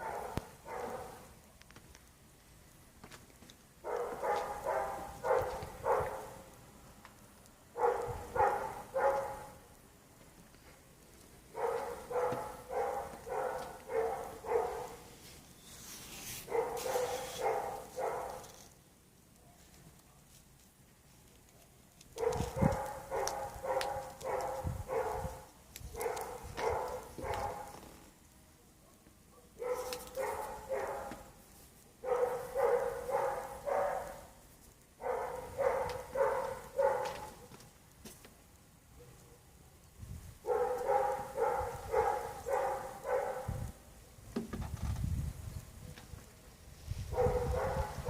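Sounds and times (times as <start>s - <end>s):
dog barking: 0.0s - 1.2s, 3.8s - 6.4s, 7.7s - 9.6s, 11.5s - 15.0s, 16.5s - 18.5s, 22.2s - 27.8s, 28.8s - 31.3s, 32.0s - 34.4s, 35.0s - 37.6s, 40.4s - 43.7s, 47.1s - 48.0s.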